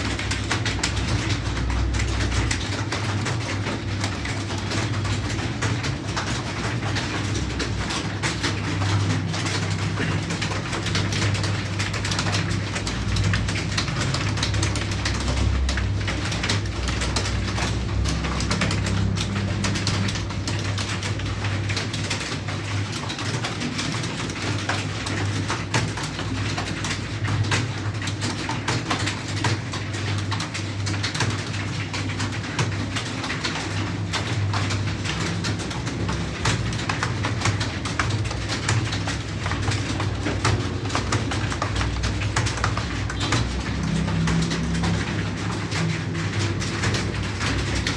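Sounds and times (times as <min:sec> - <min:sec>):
keyboard typing: 0:05.6 - 0:24.0, 0:34.3 - 0:47.9.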